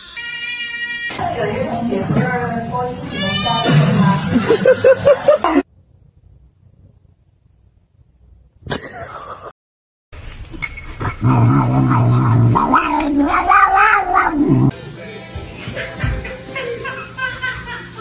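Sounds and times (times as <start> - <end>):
cat yowling: 11.3 - 14.7.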